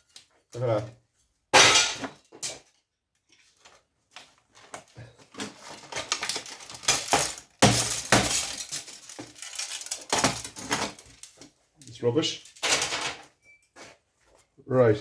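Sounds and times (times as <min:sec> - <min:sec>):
pieces clattering: 0:05.3 - 0:11.5, 0:12.3 - 0:13.3
plastic casing cracking and snapping: 0:05.4 - 0:11.4.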